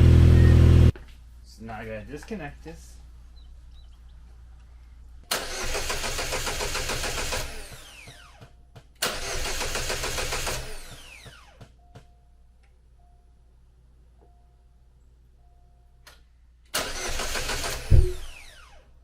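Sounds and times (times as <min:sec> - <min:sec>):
engine cranking without starting: 0:05.3 - 0:08.1, 0:09.0 - 0:11.5, 0:16.7 - 0:18.8
starter whining down: 0:05.3 - 0:08.4, 0:09.0 - 0:11.6, 0:16.7 - 0:18.9.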